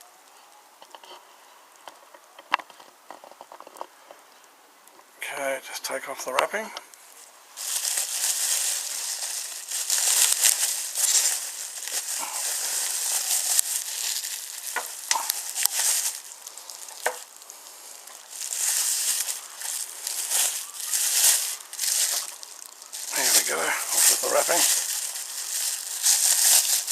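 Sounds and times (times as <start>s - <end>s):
wrapping crinkling and tearing: 7.0s - 26.9s.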